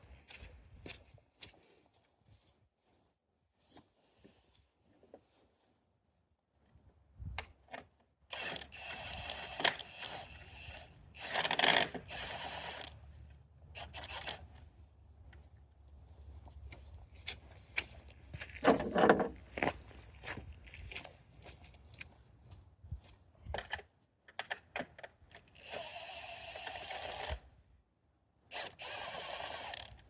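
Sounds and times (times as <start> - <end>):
sharp clicks of tools: 8.3 - 13.0, 13.8 - 14.6, 28.5 - 30.0
parts clattering: 17.8 - 19.6.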